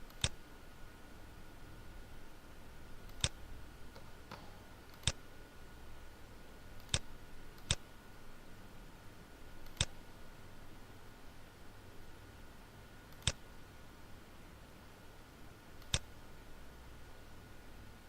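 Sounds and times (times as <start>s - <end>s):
computer mouse clicking: 0.0s - 0.4s, 3.0s - 5.2s, 6.8s - 7.8s, 9.6s - 10.0s, 13.1s - 13.4s, 15.8s - 16.1s
faint steady hum: 0.0s - 18.0s.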